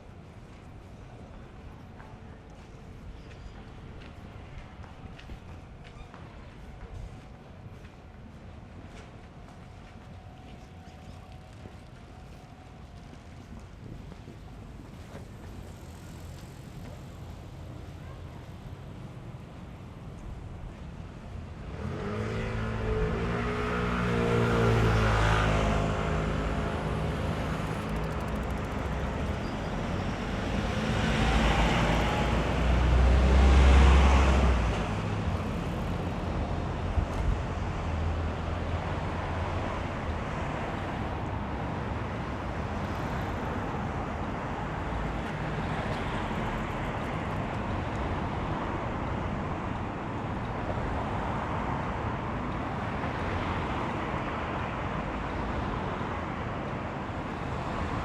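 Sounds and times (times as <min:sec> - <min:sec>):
traffic noise: 0:00.0 - 0:58.0
cars passing: 0:13.0 - 0:58.0.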